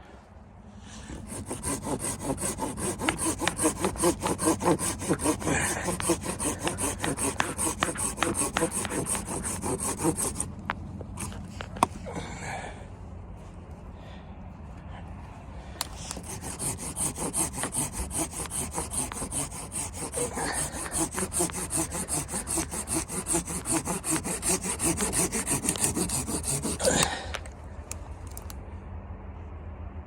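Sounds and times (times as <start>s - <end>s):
hand saw cutting wood: 0.9s - 11.9s, 15.9s - 27.3s.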